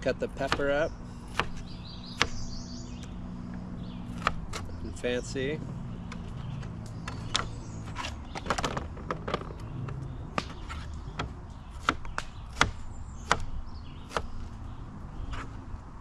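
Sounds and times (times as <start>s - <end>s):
knife chopping a pepper: 0.3s - 2.5s, 10.4s - 14.4s.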